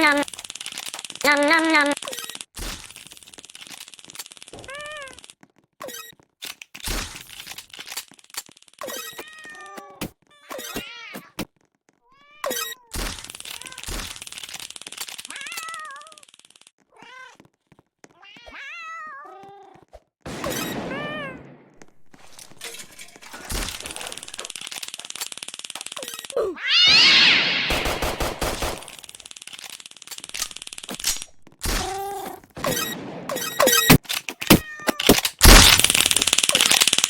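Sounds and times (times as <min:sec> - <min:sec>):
crackling clicking noise: 0:00.0 - 0:05.6, 0:06.4 - 0:09.2, 0:13.0 - 0:16.8, 0:23.6 - 0:26.4, 0:28.1 - 0:31.6, 0:33.8 - 0:37.0
cats meowing: 0:04.6 - 0:05.2, 0:09.0 - 0:11.4, 0:18.2 - 0:19.9, 0:26.4 - 0:27.7, 0:31.8 - 0:32.5, 0:34.5 - 0:35.1.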